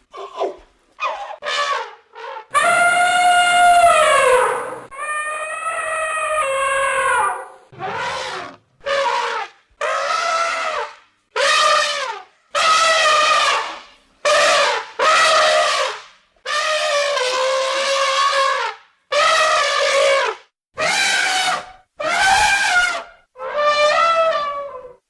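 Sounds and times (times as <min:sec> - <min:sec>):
elephant trumpeting: 0:00.3 - 0:15.8, 0:16.5 - 0:25.0.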